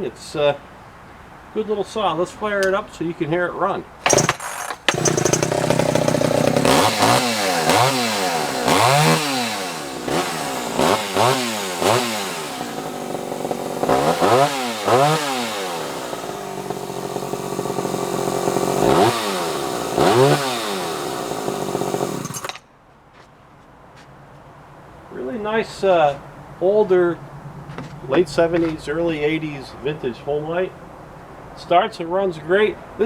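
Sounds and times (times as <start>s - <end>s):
chainsaw idling and revving: 4.0s - 22.6s.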